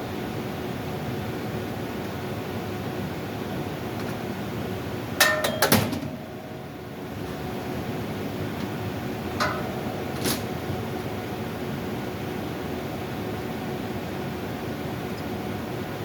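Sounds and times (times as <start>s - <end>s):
steady airy hum: 2.9s - 16.0s
ringing metal knocks and clanks: 5.2s - 6.2s, 9.4s - 10.5s.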